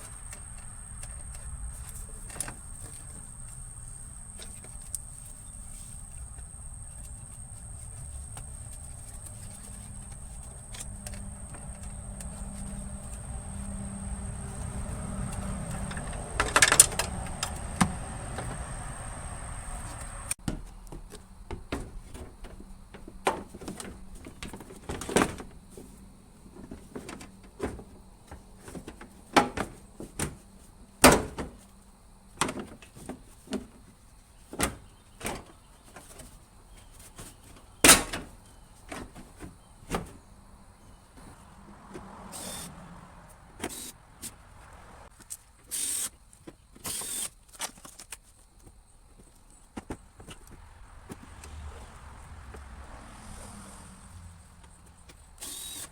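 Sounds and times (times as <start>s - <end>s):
hand tools clicking on metal: 15.3s - 17.9s.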